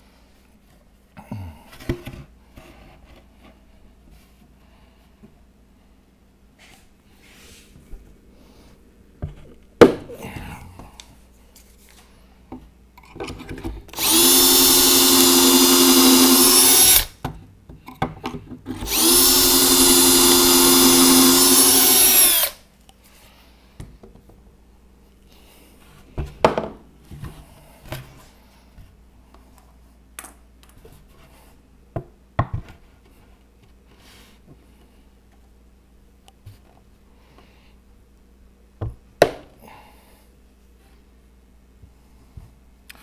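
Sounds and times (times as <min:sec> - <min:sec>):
cordless drill boring into plywood: 0:14.0 - 0:17.1, 0:18.8 - 0:22.6.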